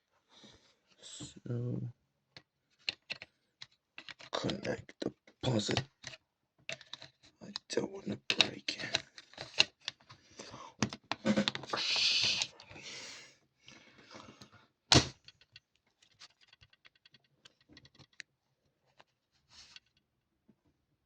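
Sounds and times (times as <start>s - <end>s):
rustling and scraping: 15.4s - 18.2s, 18.8s - 20.0s.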